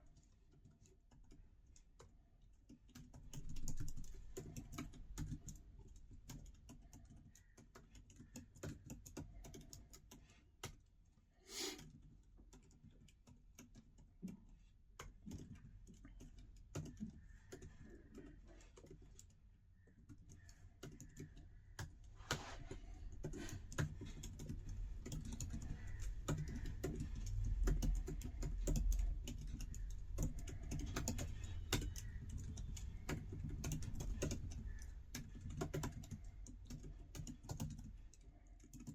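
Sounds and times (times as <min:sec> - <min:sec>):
laptop keyboard typing: 0:00.0 - 0:10.9, 0:11.8 - 0:38.9.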